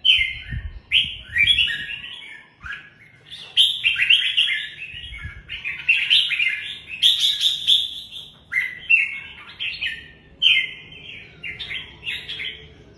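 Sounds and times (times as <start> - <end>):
bird singing warbled phrases: 0.0 - 12.9.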